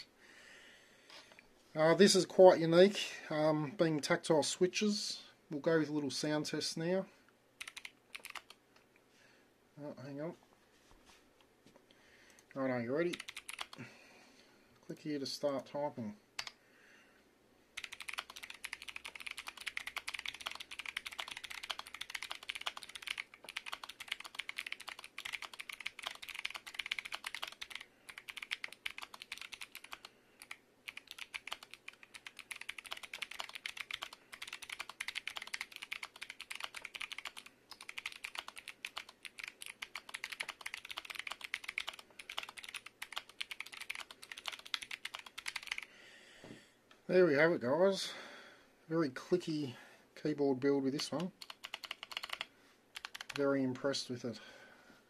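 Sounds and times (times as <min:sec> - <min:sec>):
clicky mechanical keyboard typing: 0:07.6 - 0:08.6, 0:13.1 - 0:13.8, 0:17.8 - 0:45.9, 0:51.0 - 0:53.4.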